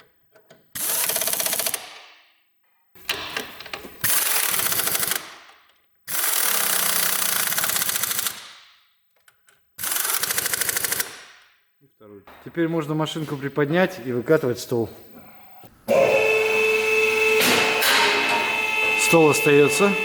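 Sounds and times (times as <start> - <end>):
impact wrench hammering: 15.9 - 20.0.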